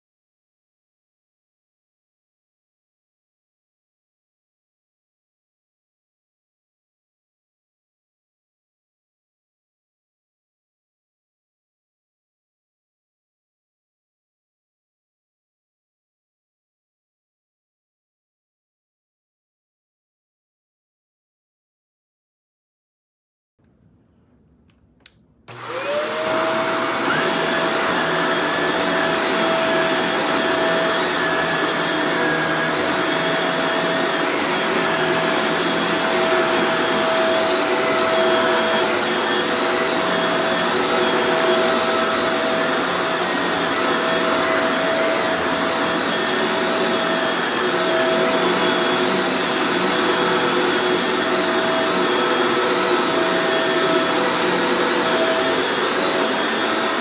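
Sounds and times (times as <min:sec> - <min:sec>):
vacuum cleaner motor whine: 0:25.5 - 0:57.0.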